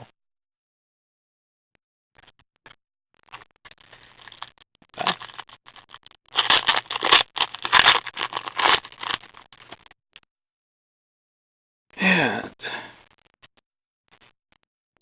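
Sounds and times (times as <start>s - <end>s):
foil wrapper tearing and crinkling: 4.0s - 9.7s.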